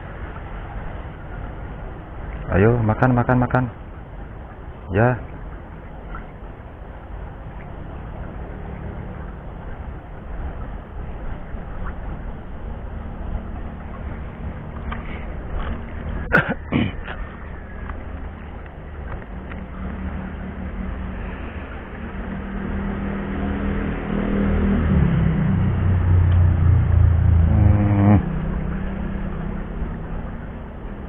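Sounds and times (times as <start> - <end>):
motor engine running: 23.3 - 30.4.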